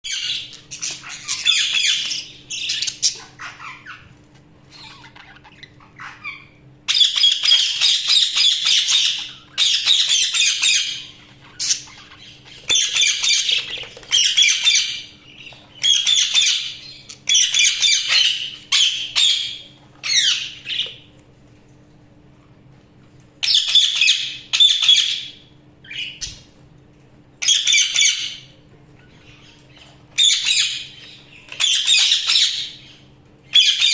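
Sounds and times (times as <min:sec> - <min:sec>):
budgerigars chattering and squawking: 0:00.1 - 0:04.1, 0:04.7 - 0:21.0, 0:29.1 - 0:33.9.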